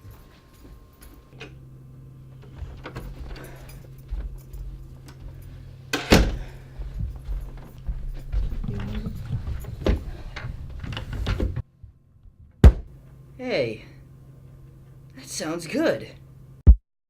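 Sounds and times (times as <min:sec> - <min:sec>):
steady low hum: 0:00.0 - 0:16.7
loud sharp thud: 0:12.6 - 0:12.9.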